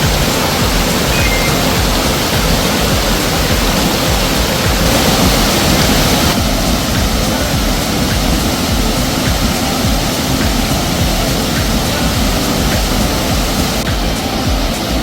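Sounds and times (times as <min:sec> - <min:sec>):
water rushing in a stream: 0:00.0 - 0:15.0.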